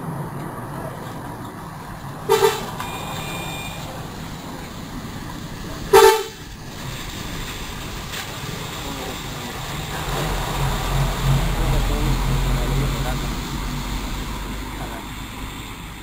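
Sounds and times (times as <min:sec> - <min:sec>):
vehicle horn toots: 0:02.3 - 0:04.0, 0:05.9 - 0:06.5.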